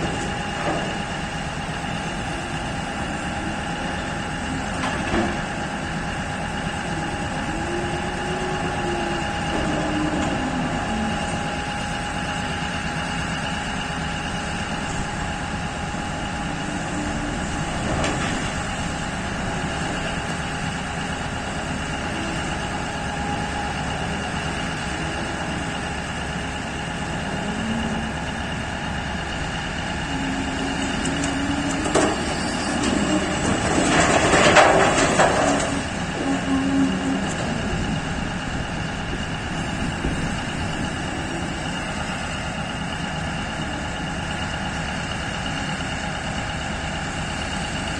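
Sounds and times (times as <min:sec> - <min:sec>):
machinery hum with whining drives: 0:00.0 - 0:47.9.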